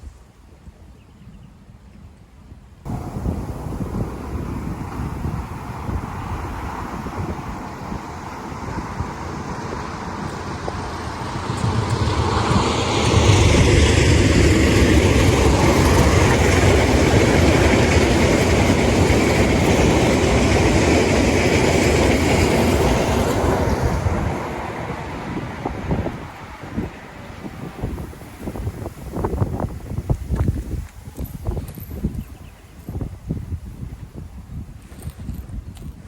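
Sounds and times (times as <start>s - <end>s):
train wheels clattering on rails: 2.9s - 29.4s.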